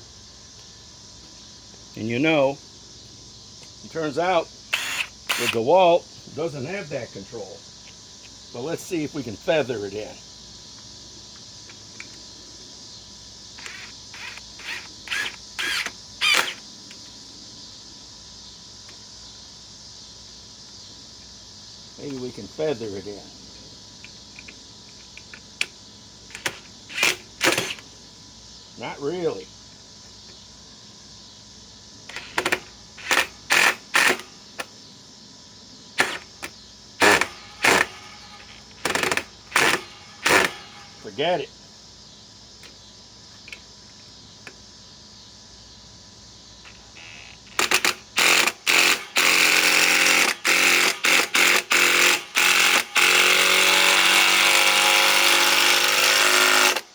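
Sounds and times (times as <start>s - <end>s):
impact driver hammering: 37.0s - 41.0s, 47.6s - 56.8s.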